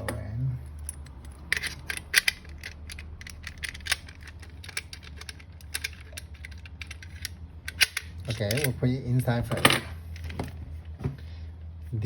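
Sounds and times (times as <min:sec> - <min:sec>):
lock hardware clicking and rattling: 0:00.0 - 0:10.6
steady low hum: 0:00.0 - 0:12.0.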